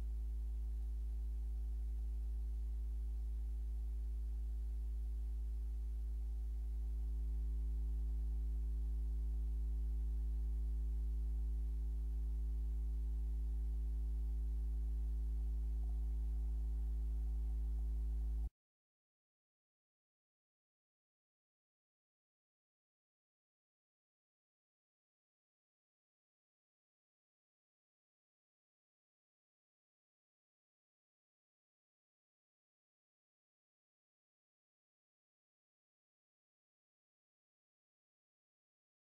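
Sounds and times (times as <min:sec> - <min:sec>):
low electrical hum: 0:00.0 - 0:18.5.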